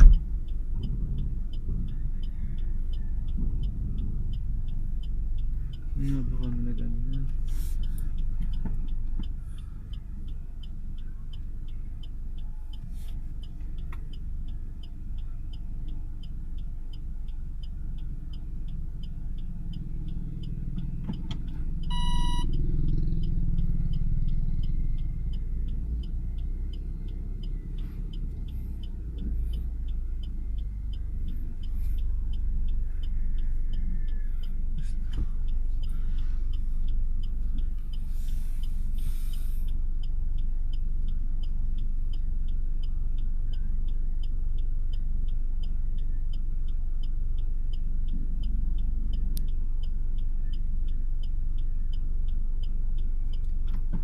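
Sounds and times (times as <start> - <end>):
car engine and road noise: 0.0 - 54.0
faint even ticking: 0.0 - 54.0
short beep: 21.9 - 22.5.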